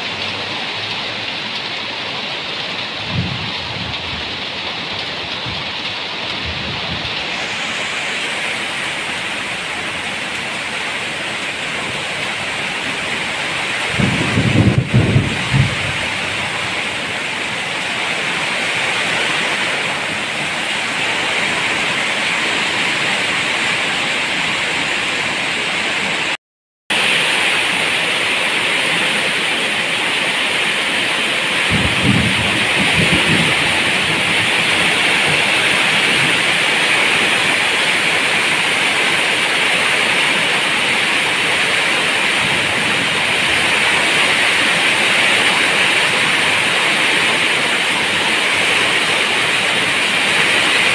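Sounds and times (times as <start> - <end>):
heavy rain hissing: 0.0 - 50.9
low rumble of thunder: 3.0 - 4.4, 13.8 - 16.8, 31.6 - 36.5.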